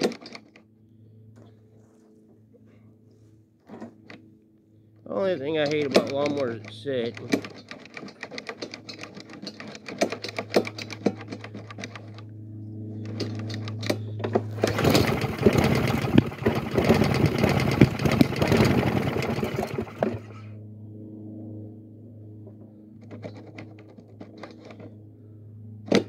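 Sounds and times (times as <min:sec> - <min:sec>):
lawn mower pull cord cranking: 0:00.0 - 0:00.6, 0:05.4 - 0:12.3, 0:13.0 - 0:20.4, 0:23.0 - 0:24.9
lawn mower engine running: 0:05.3 - 0:20.5, 0:23.0 - 0:25.0.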